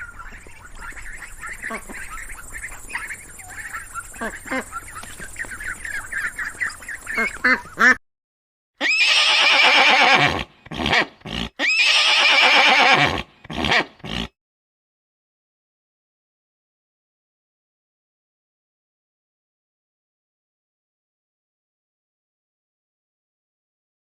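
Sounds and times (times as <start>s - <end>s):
ducks quacking: 0.0s - 8.0s
horse neighing: 8.8s - 14.3s.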